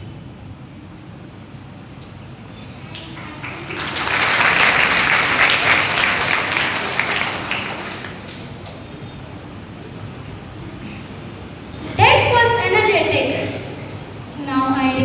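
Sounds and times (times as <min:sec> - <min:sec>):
audience applauding: 0:02.9 - 0:08.8.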